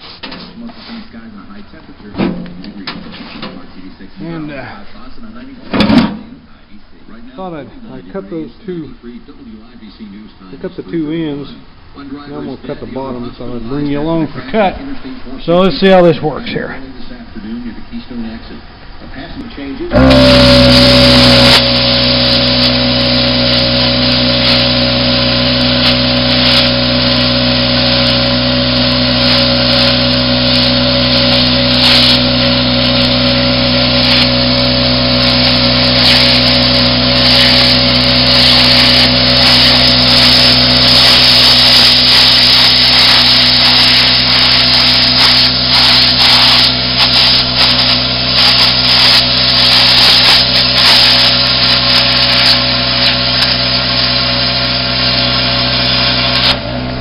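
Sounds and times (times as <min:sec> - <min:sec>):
steady hum: 0:00.0 - 0:57.0
plasma cutter hissing: 0:19.5 - 0:56.7
crackling: 0:19.9 - 0:56.6.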